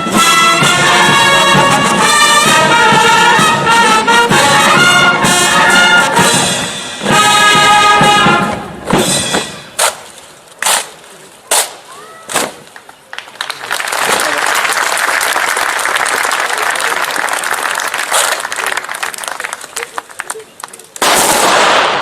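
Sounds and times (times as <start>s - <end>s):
brass band playing a march: 0.0s - 10.0s.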